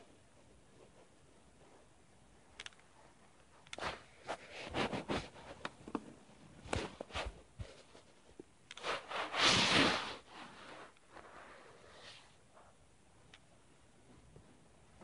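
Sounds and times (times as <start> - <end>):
handling rustling and rubbing: 0.0 - 15.0
sharp clicks: 2.6 - 2.9.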